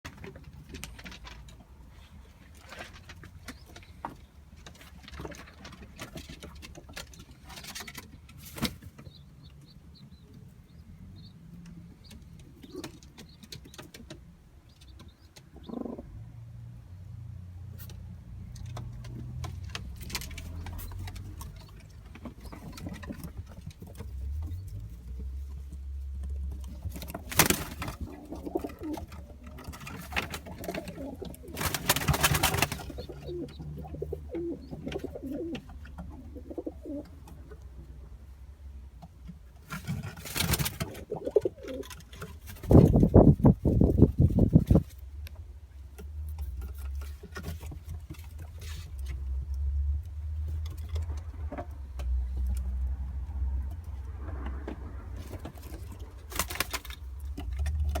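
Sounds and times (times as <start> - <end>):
pigeons cooing: 15.6 - 16.2, 26.8 - 37.4, 40.4 - 42.1.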